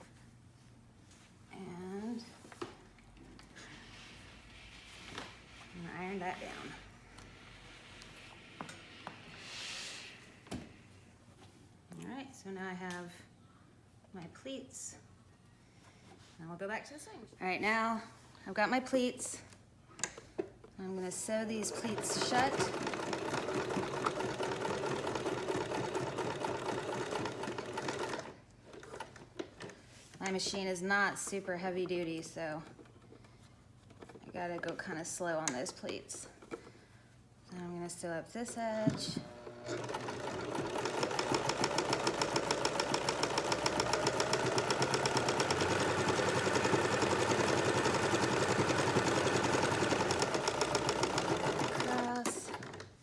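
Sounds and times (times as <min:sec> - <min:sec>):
sewing machine stitching: 0:21.6 - 0:29.1, 0:38.8 - 0:52.9.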